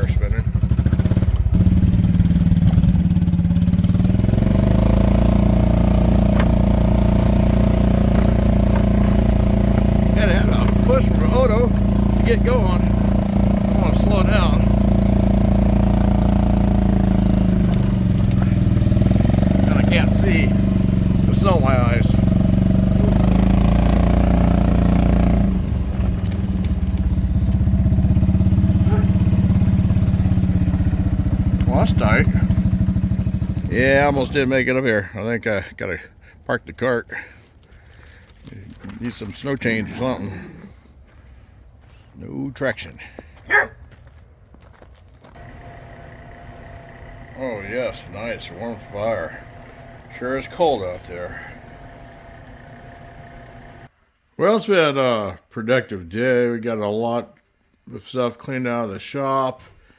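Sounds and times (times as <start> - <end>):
wheels spinning on snow: 0.0 - 34.7, 45.2 - 53.9
golf cart engine running: 0.0 - 34.8, 45.1 - 53.9.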